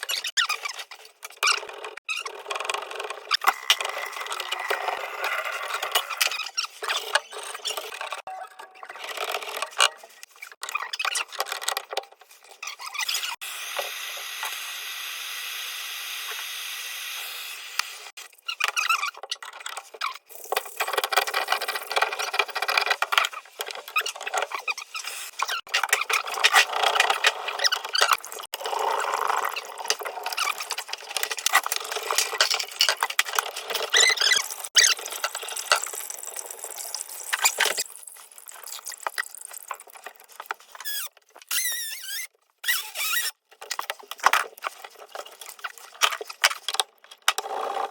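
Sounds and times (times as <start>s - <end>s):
squeaking and scraping of fittings: 0.0s - 13.4s, 18.1s - 20.3s, 20.9s - 28.3s, 29.0s - 35.5s, 39.7s - 47.9s.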